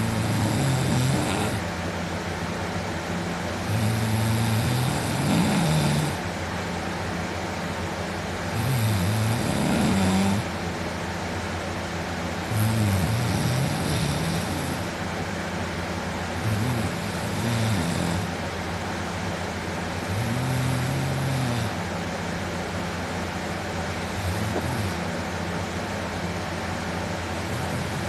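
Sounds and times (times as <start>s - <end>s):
man snoring loudly: 0.0s - 1.7s, 3.6s - 6.2s, 8.5s - 10.5s, 12.4s - 15.0s, 16.4s - 18.4s, 20.0s - 21.8s, 24.0s - 25.2s, 27.4s - 28.0s
steady background hum: 0.0s - 28.0s.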